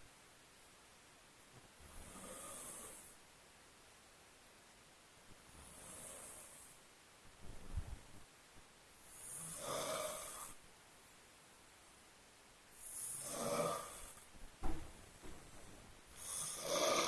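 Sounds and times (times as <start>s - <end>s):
person snoring: 2.0s - 3.1s, 5.6s - 6.8s, 9.1s - 10.6s, 12.8s - 14.2s, 16.2s - 17.0s
low thump: 14.6s - 15.5s.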